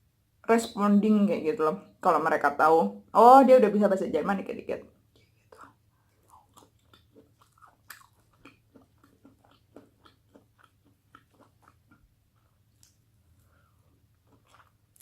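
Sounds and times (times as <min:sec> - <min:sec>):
person chewing food: 0:05.0 - 0:15.0.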